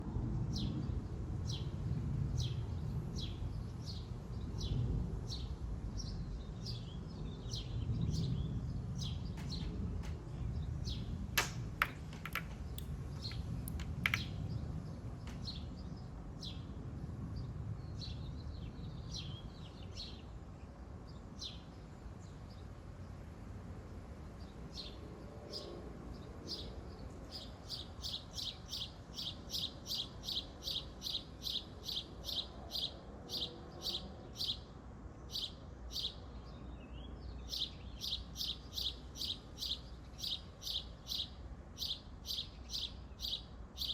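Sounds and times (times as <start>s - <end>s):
small birds chirping: 1.5s - 23.3s, 24.3s - 43.9s
sharp clicks: 11.4s - 14.4s.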